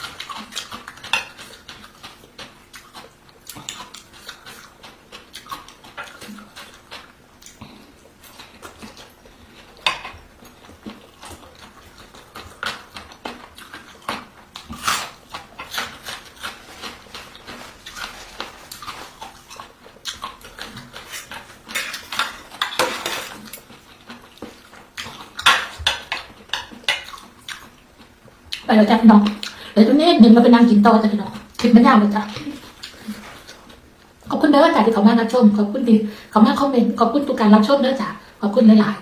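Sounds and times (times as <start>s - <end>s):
chewing mouth sounds: 0.0s - 29.8s.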